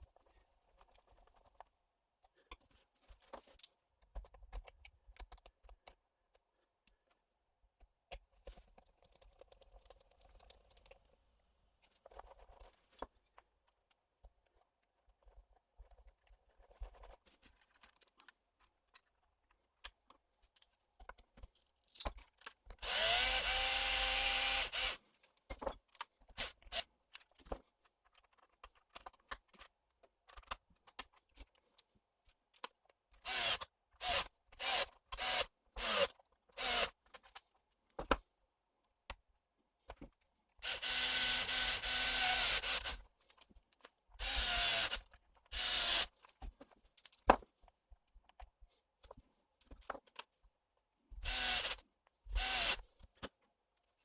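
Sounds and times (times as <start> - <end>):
light clicks and handling noises: 0.0 - 11.1, 11.8 - 22.8, 25.1 - 33.2, 43.0 - 44.2, 46.1 - 51.0
small electric motor whirring: 22.8 - 25.0, 40.6 - 43.0, 44.2 - 45.0, 45.6 - 46.1, 51.3 - 51.8, 52.4 - 52.8.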